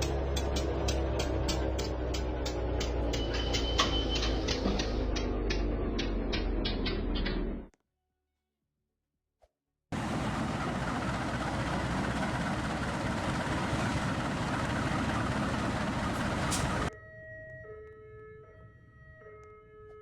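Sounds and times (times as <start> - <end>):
diesel locomotive running: 0.0 - 7.7, 10.0 - 16.9.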